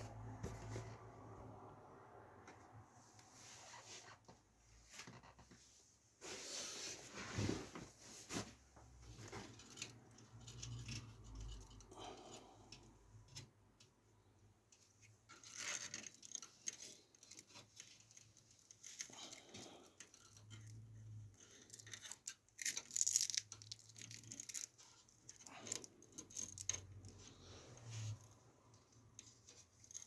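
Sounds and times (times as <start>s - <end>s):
cables rustling and scraping: 0.0s - 30.0s
light clicks of small parts: 9.1s - 27.4s.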